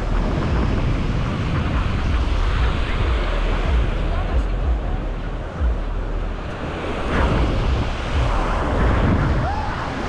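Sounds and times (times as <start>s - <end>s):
wind buffeting microphone: 0.0s - 10.0s
sea waves breaking on shore: 6.3s - 10.0s.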